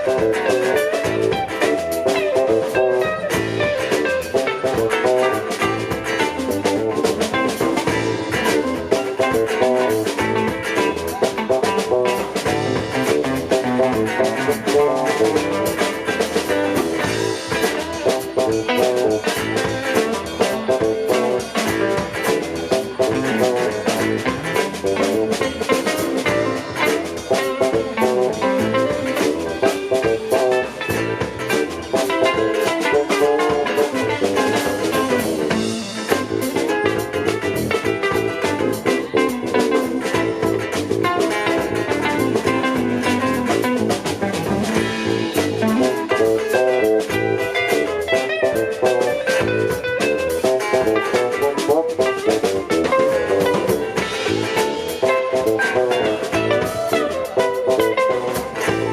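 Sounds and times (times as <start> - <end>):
drums: 0.0 - 58.9
guitar: 0.0 - 58.9
live band playing: 0.0 - 58.9.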